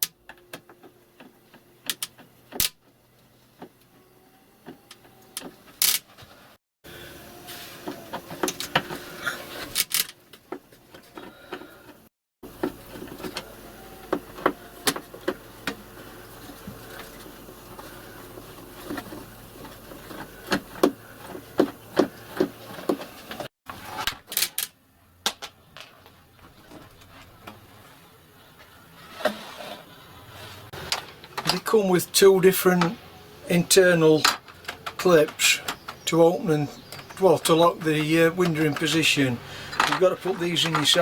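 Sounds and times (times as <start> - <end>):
hands handling plastic parts: 36.8 - 41.0.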